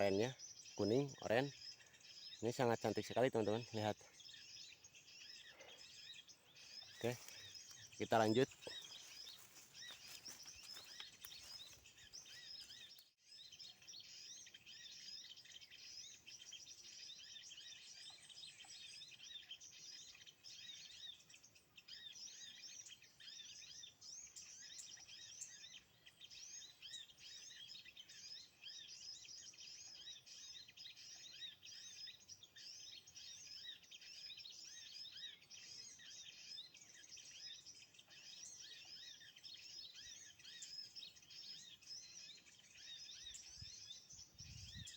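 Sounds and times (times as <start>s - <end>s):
small birds chirping: 0.0s - 44.9s.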